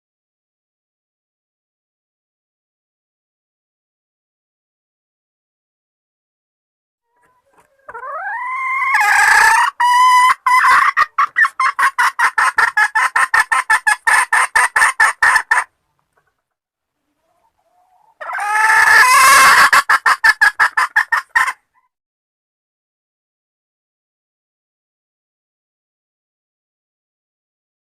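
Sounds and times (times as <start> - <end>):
hen calling with fast clucks: 7.1 - 16.4, 17.1 - 21.9.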